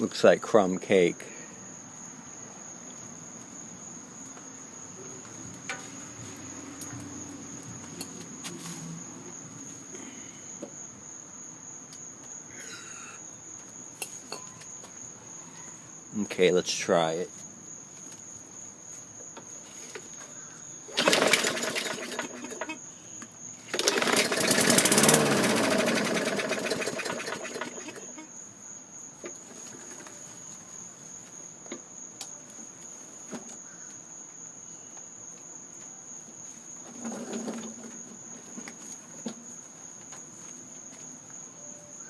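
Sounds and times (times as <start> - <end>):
crickets chirping: 0.0 - 42.0
lawn mower engine running: 20.9 - 22.8, 23.6 - 28.2
lawn mower pull-start cord: 20.9 - 22.8, 23.6 - 28.2.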